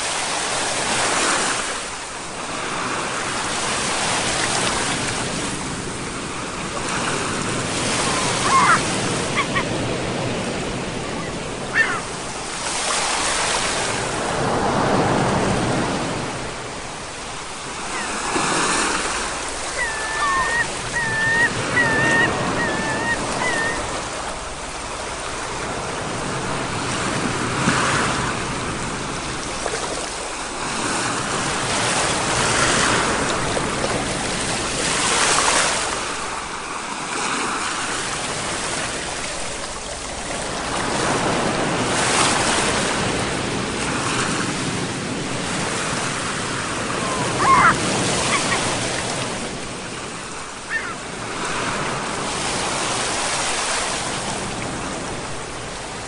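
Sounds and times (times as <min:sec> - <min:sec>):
sea waves breaking on shore: 0:00.0 - 0:56.0
short high chirping calls: 0:19.8 - 0:23.9.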